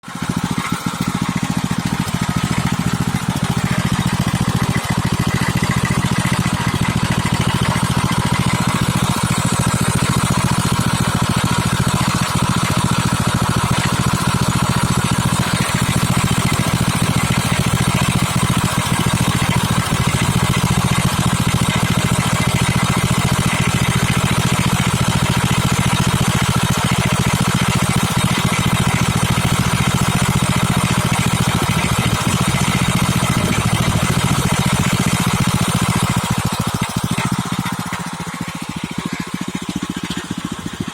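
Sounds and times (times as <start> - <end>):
engine idling with knock: 0.0 - 40.9.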